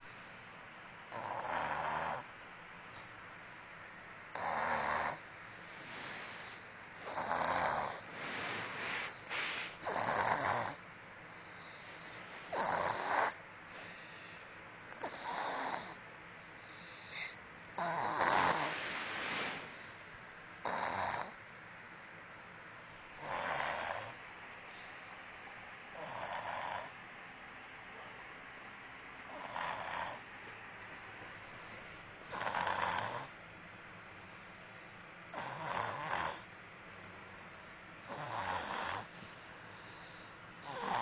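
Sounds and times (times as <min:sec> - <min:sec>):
person snoring loudly: 0:07.0 - 0:08.0, 0:09.8 - 0:10.8, 0:17.8 - 0:18.8, 0:40.6 - 0:41.0.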